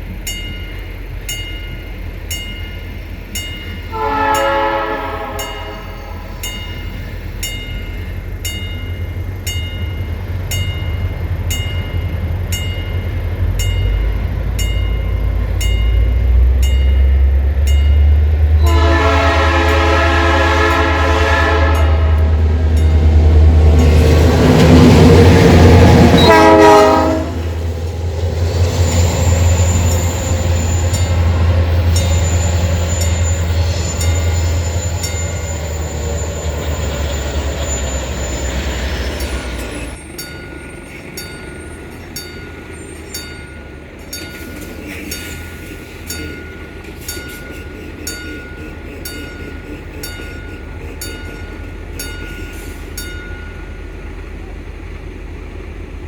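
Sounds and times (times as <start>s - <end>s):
diesel engine rumbling: 0.0s - 56.0s
rail equipment clicking: 0.0s - 56.0s
locomotive horn: 3.9s - 6.5s, 18.5s - 22.8s, 24.6s - 27.6s.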